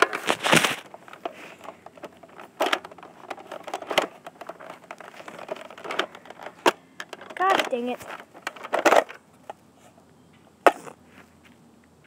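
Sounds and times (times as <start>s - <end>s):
scuffling and rustling: 0.0s - 1.8s.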